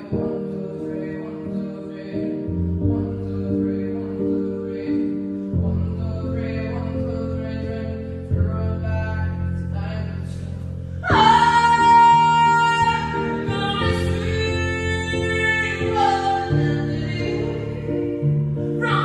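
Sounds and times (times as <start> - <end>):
person singing long notes: 0.0 - 19.0.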